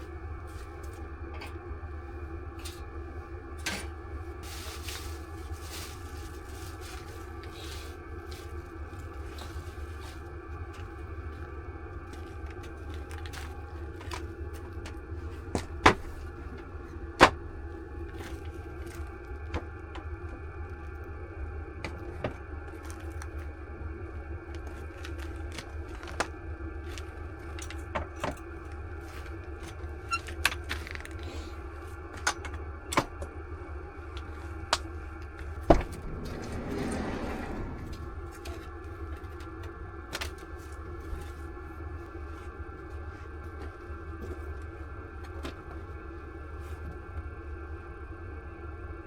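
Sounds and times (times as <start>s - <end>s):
low hum: 35.6s - 38.7s.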